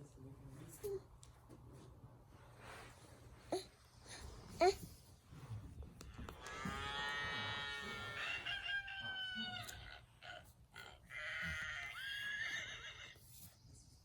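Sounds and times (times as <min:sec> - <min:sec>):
recorded rooster crowing: 0:06.4 - 0:13.2.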